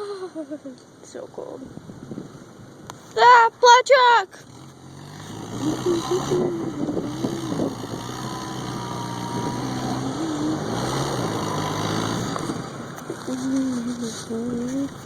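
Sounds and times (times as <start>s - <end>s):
vehicle engine running: 4.3s - 15.0s.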